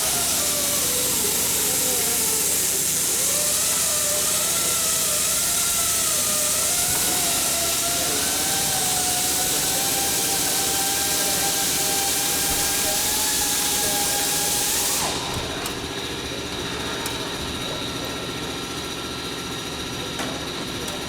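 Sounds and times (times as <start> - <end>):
machinery hiss with whining tone: 0.0 - 16.3.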